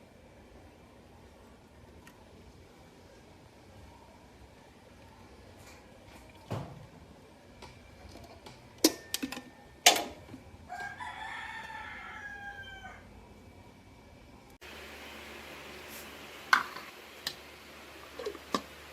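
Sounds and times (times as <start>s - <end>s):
rooster crowing: 10.7s - 13.1s.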